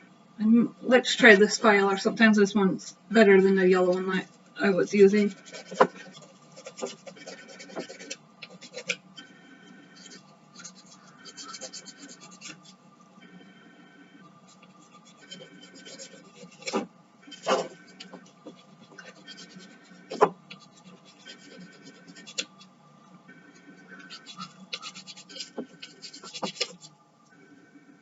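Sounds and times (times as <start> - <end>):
nail file rasping on resin: 5.3 - 9.0, 24.1 - 26.9.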